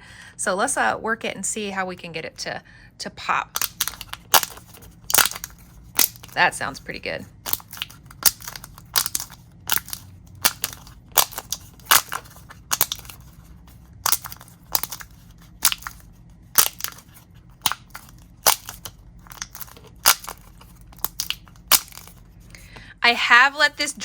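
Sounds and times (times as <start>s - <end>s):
sharp plastic pops: 3.6s - 6.4s, 7.4s - 13.3s, 14.0s - 22.2s.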